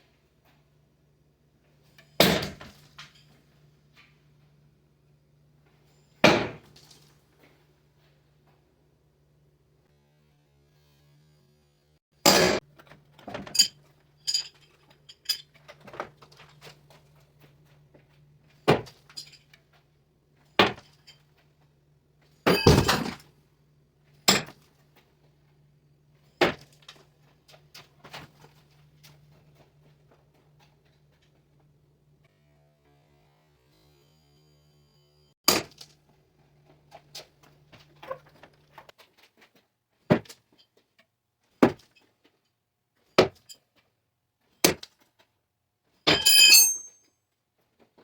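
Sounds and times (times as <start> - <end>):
sharp clinks and knocks: 13.2 - 15.7, 18.8 - 19.6, 22.5 - 23.2, 46.1 - 47.1.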